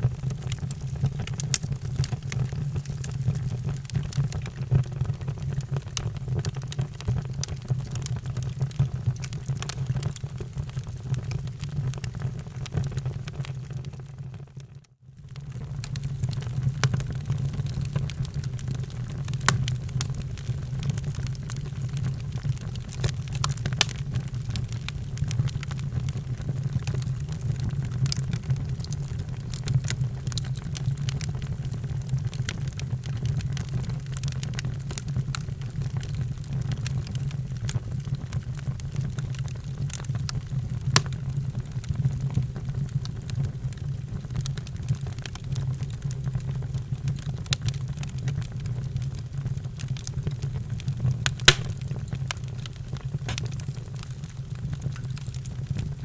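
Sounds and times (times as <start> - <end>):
fireplace fire crackling: 0.1 - 14.0, 15.4 - 56.0
sharp pops: 19.4 - 20.2, 51.4 - 52.1.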